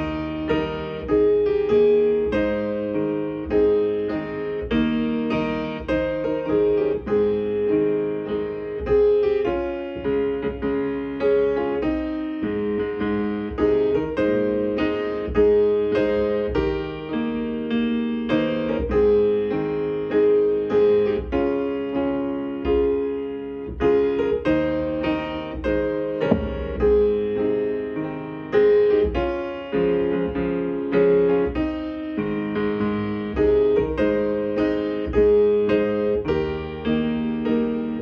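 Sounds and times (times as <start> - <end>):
piano playing slow chords: 0.0 - 38.0.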